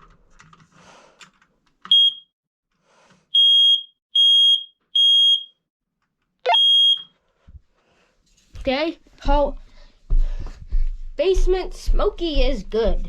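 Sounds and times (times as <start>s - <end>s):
smoke alarm beeping: 1.9s - 2.3s, 3.3s - 5.6s, 6.5s - 7.1s.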